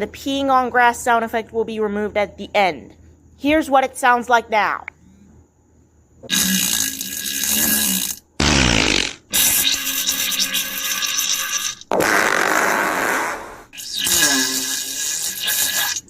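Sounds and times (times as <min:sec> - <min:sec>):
fart sounds: 0:06.2 - 0:16.0.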